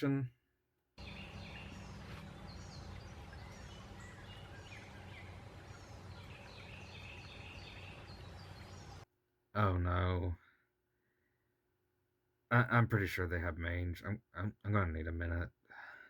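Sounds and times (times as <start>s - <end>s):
birds chirping: 1.0s - 9.0s
low hum: 1.0s - 9.0s.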